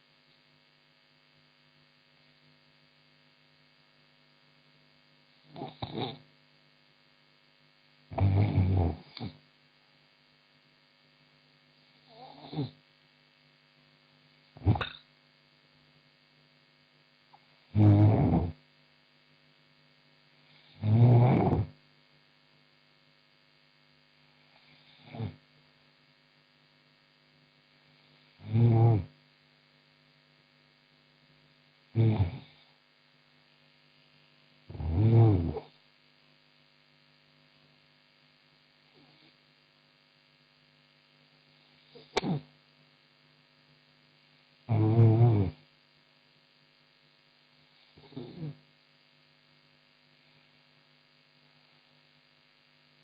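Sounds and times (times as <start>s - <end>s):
low electrical hum: 0.0s - 53.0s
woman snoring: 5.5s - 6.2s, 8.1s - 9.4s, 12.1s - 12.8s, 14.6s - 15.0s, 17.7s - 18.6s, 20.5s - 21.7s, 24.5s - 25.4s, 28.4s - 29.1s, 32.0s - 32.7s, 34.7s - 35.8s, 41.9s - 42.4s, 44.7s - 45.6s, 47.8s - 48.6s.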